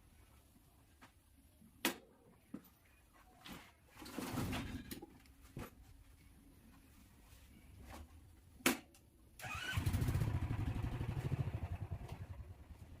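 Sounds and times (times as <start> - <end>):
motorcycle engine running: 9.8 - 13.0.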